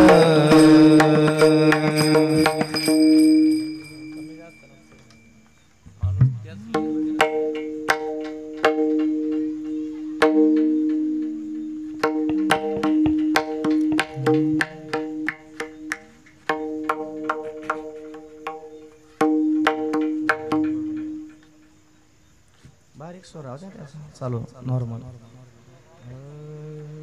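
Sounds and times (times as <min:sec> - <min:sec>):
tuned hand drum strokes: 0:00.0 - 0:21.4.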